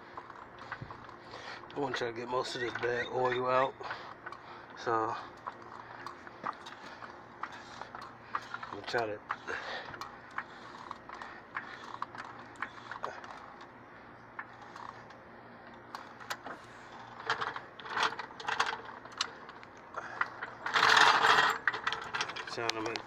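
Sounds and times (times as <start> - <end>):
metal tools clicking and clanking: 16.0 - 23.0.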